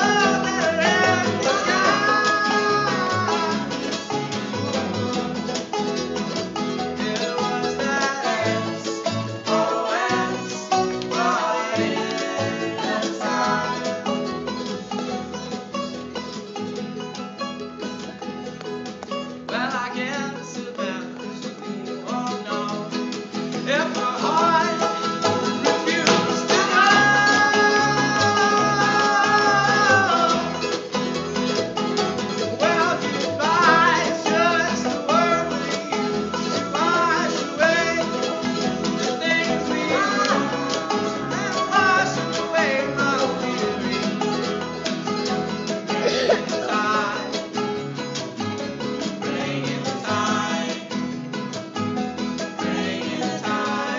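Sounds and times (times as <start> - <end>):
plucked string instruments: 0.0 - 53.9.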